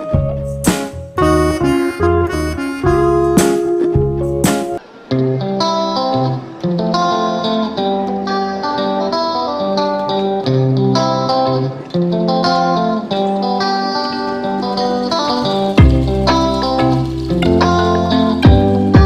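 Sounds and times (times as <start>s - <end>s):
bass line: 0.0s - 4.8s, 15.6s - 19.0s
plucked guitar melody: 0.0s - 19.0s.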